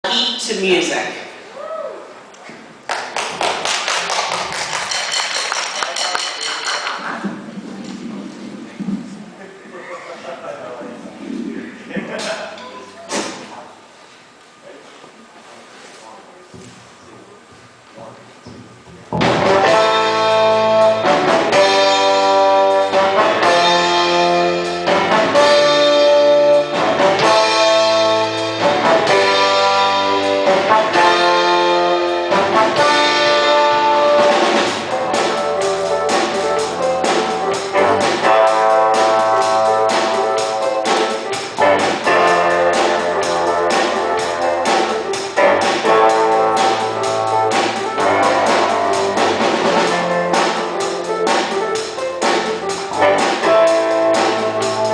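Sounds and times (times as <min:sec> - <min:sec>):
drumming: 0:02.9 - 0:09.6, 0:18.8 - 0:54.9
held horn chords: 0:19.1 - 0:54.9.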